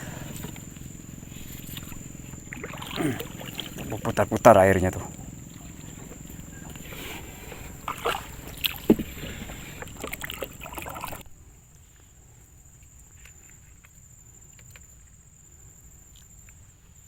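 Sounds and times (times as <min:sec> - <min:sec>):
faint ticks: 0:00.0 - 0:12.1
water sloshing around boat: 0:00.0 - 0:14.0.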